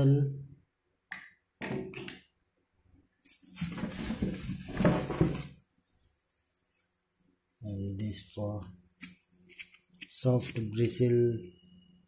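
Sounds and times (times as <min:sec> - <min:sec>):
plastic packaging rustling: 0:03.3 - 0:05.6.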